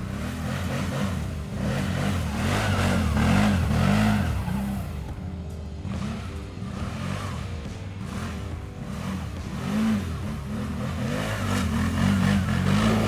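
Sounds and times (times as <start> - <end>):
motorbike engine revving: 0.0 - 13.0.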